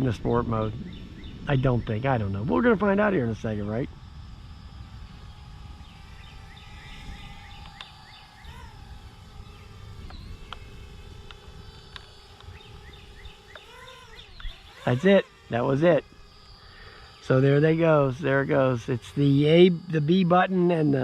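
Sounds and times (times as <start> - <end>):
wind rumble on microphone: 0.0 - 16.6
distant drone propeller whine: 0.0 - 21.0
bird chirps: 5.8 - 11.0, 12.4 - 15.0
sharp ticks: 6.2 - 8.6, 10.0 - 21.0.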